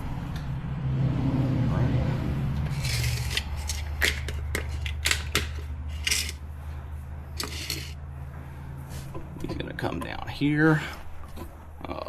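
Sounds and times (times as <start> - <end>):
hand tools clattering on metal: 2.8 - 6.4, 7.4 - 8.0.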